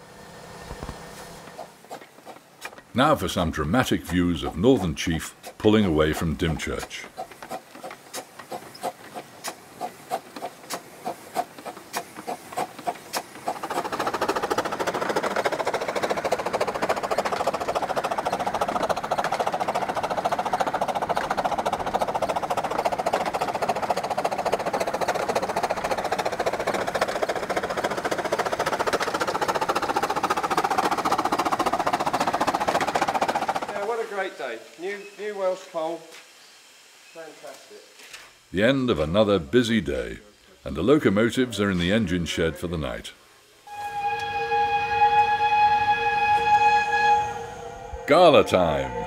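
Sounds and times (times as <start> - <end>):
steam locomotive chuffing: 1.3 - 34.1, 43.6 - 49.0.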